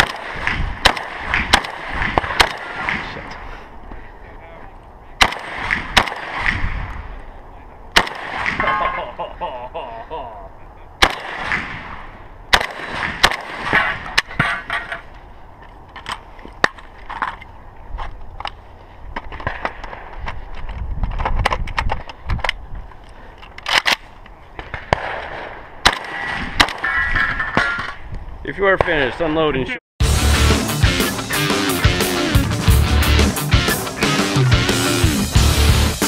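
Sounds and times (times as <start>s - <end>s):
gunshots: 0.0s - 3.3s, 5.2s - 6.9s, 7.9s - 9.1s, 11.0s - 14.6s, 24.6s - 27.8s.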